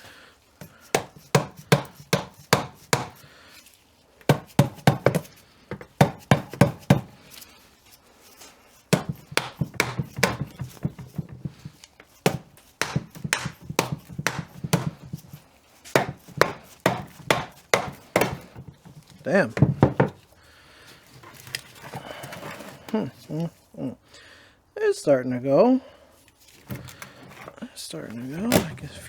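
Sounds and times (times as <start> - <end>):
hammer striking metal cover: 0.9 - 3.3, 4.3 - 7.2, 8.9 - 11.7, 12.3 - 15.3, 16.0 - 18.6.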